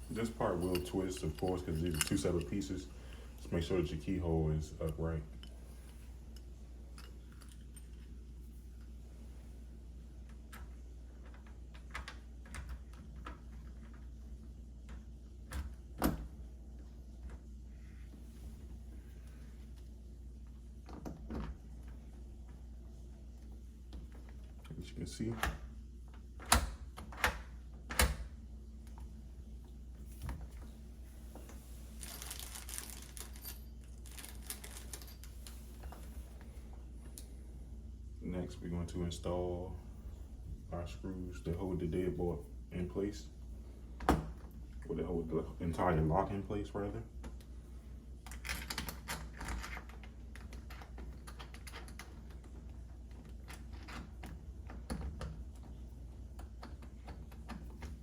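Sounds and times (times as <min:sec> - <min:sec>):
metal lock parts clicking: 0:00.0 - 0:03.6
rustling: 0:29.9 - 0:37.1.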